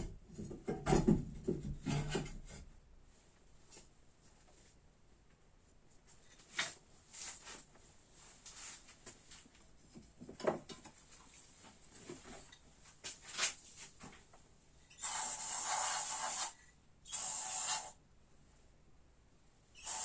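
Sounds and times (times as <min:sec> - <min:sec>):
pressurised spray hissing: 0:15.0 - 0:18.0, 0:19.8 - 0:20.0.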